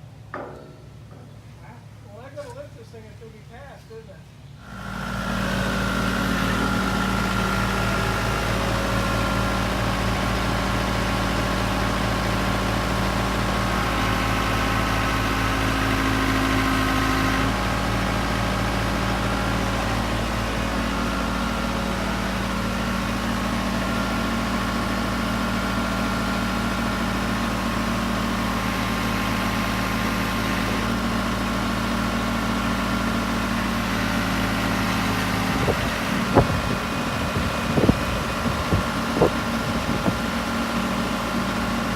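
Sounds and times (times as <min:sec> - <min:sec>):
sharp knocks: 0:00.3 - 0:01.4
backhoe engine running: 0:04.6 - 0:41.9.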